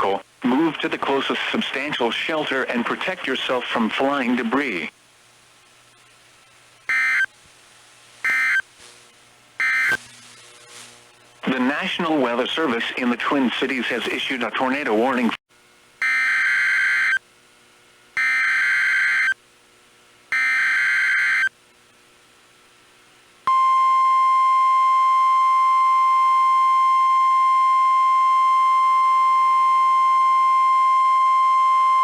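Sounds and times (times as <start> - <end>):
steady warning alarm tone: 6.9 - 7.3, 8.3 - 8.6, 9.6 - 10.8, 18.2 - 19.4, 20.3 - 21.5
buzzing digital data bursts: 8.2 - 12.0.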